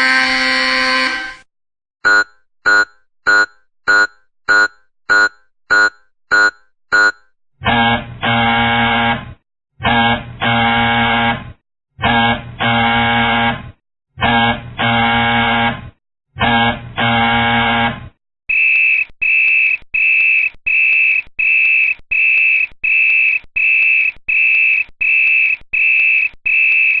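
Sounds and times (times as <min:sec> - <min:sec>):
harsh electronic buzzer: 0:00.0 - 0:01.4, 0:02.0 - 0:09.2, 0:09.9 - 0:11.4, 0:12.0 - 0:27.0
high-pitched electronic beeps: 0:02.1 - 0:07.3.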